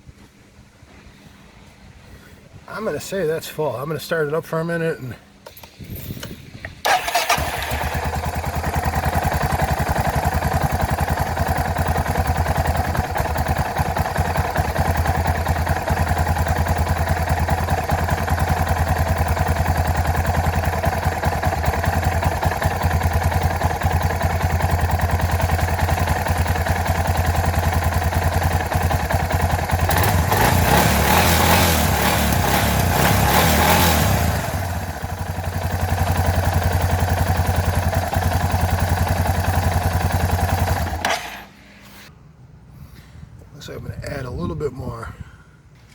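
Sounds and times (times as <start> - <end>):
motorcycle engine idling: 6.2 - 41.5.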